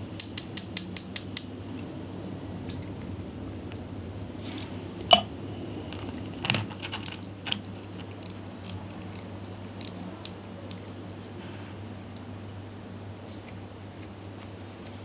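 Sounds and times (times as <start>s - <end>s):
sticky slime clicks and crackles: 6.8s - 11.0s.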